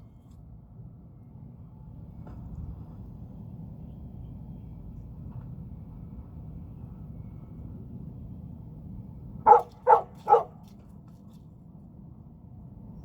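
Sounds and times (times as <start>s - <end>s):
dog barking: 9.5s - 10.6s.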